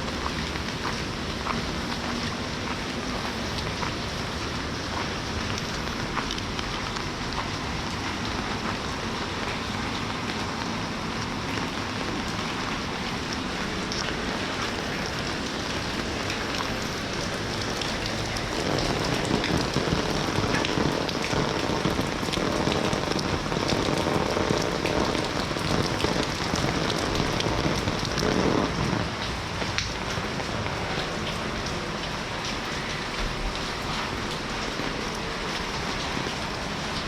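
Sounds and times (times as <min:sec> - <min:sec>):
individual raindrops: 0:00.0 - 0:37.0
steady rain falling: 0:00.0 - 0:37.0.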